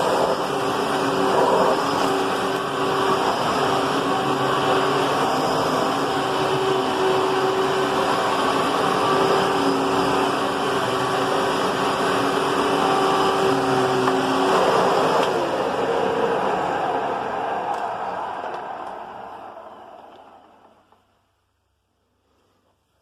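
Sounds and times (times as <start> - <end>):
vacuum cleaner running: 0.0 - 18.3.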